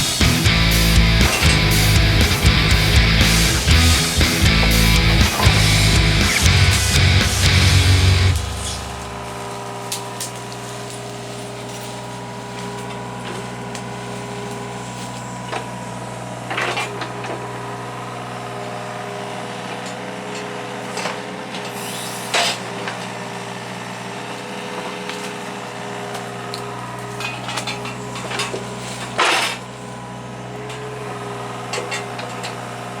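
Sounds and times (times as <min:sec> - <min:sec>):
excavator diesel engine running: 0:00.0 - 0:20.9
short cracks and scrapes: 0:08.3 - 0:15.7.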